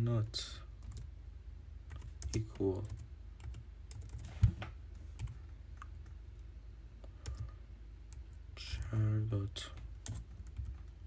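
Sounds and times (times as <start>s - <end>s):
low steady hum: 0.0s - 11.0s
computer keyboard typing: 0.8s - 1.1s, 1.9s - 4.4s, 5.2s - 5.4s, 7.2s - 7.5s, 9.8s - 11.0s.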